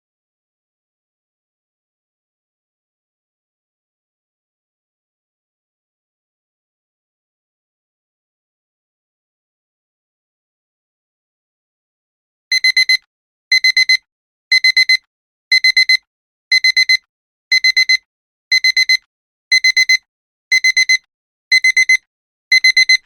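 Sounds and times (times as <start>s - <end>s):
alarm clock beeping: 12.5s - 23.0s.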